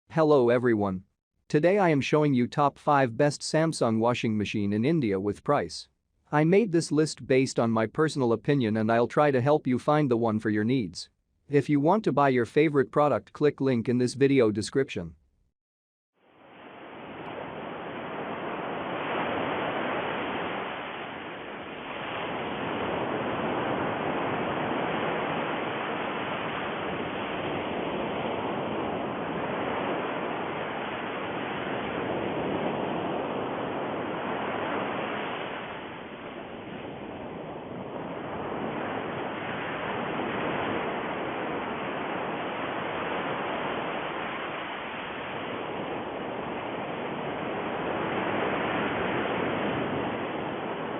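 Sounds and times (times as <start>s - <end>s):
steady rushing noise: 16.3s - 50.9s.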